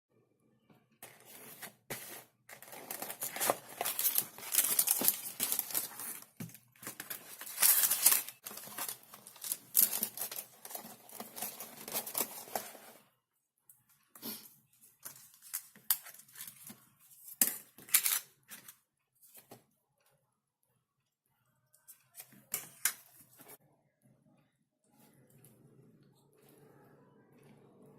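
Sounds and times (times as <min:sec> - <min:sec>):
packaging rustles and clicks: 0:01.0 - 0:13.0
paper and plastic crinkling: 0:01.0 - 0:13.0, 0:15.0 - 0:19.6.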